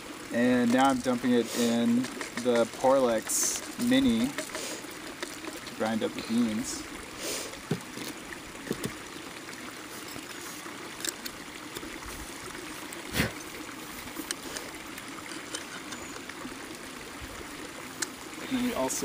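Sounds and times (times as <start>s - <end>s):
hand grinder grinding coffee beans: 1.4s - 6.3s.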